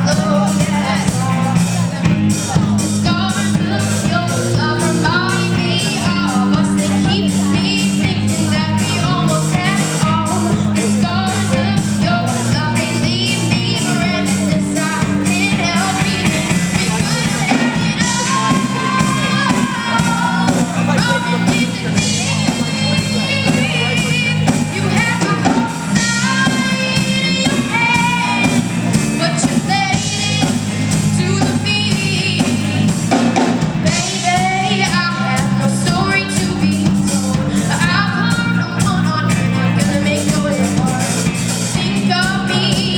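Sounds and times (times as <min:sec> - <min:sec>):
person singing: 0:00.0 - 0:42.9
rock guitar: 0:00.0 - 0:42.9
steady drumbeat: 0:00.0 - 0:42.9.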